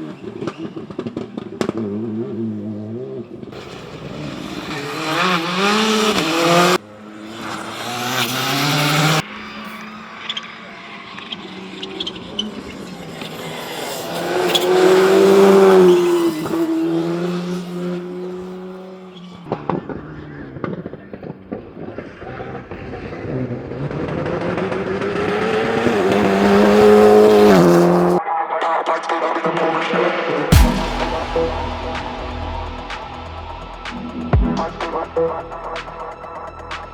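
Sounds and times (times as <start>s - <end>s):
rally cars passing at full throttle: 0.0s - 28.2s.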